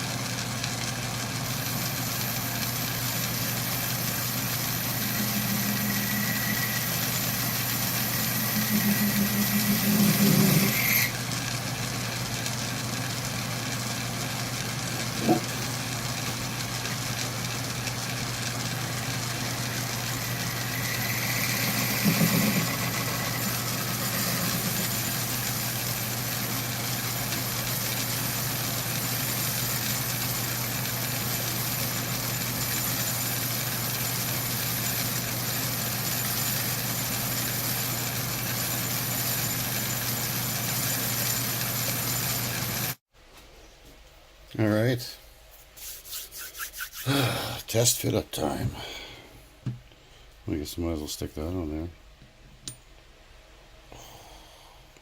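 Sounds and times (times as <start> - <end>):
low machine hum: 0.0 - 45.6
power tool working: 1.6 - 11.2, 18.6 - 43.0.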